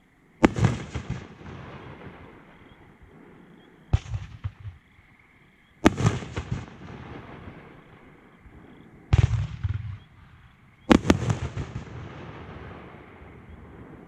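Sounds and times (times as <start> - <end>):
firework cracks: 0.4 - 2.4, 3.9 - 4.9, 5.8 - 7.7, 9.1 - 13.2
firework shells bursting: 3.9 - 4.9, 9.1 - 12.6
rumbling echo: 5.9 - 14.0.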